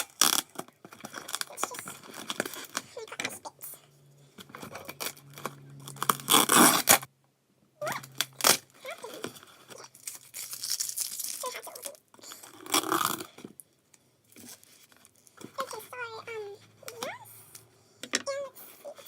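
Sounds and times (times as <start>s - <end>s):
packaging ripping: 0.0s - 2.8s, 4.5s - 7.1s, 8.0s - 13.4s
packaging crinkling: 0.0s - 2.9s, 8.0s - 13.4s.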